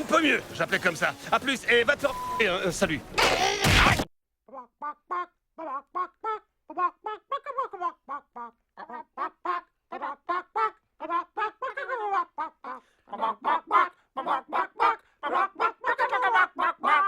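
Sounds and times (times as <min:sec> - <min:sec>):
cartoon bird squawking and clucking: 0:03.2 - 0:04.0, 0:04.6 - 0:17.0.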